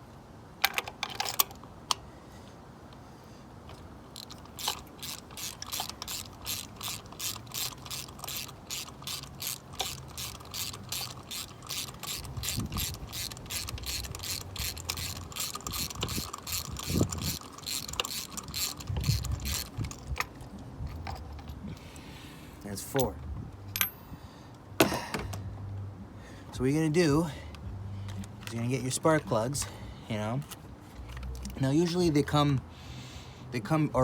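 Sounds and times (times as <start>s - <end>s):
socket ratchet clicking: 3.7s - 20.3s.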